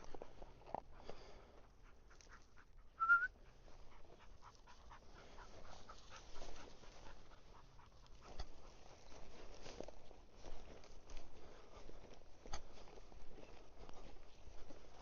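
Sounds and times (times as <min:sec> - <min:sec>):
dog panting: 0:00.1 - 0:15.0
short rising whistle: 0:03.0 - 0:03.3
steps through brush: 0:03.7 - 0:15.0.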